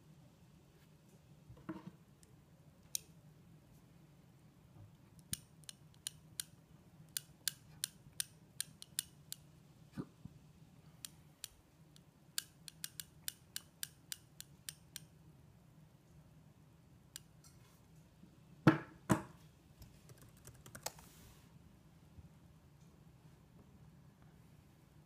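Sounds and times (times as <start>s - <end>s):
laptop keyboard typing: 19.8s - 21.1s.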